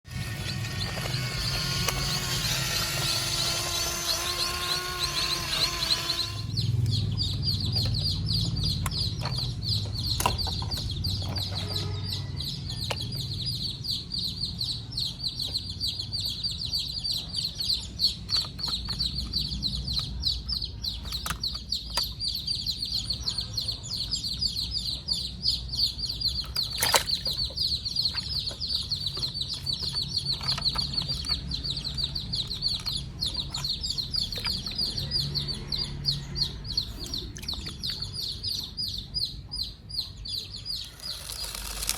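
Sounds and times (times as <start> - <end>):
fast high-pitched chirping: 0.0 - 11.2, 36.8 - 41.9
sharp clicks: 0.1 - 10.9, 40.7 - 41.9.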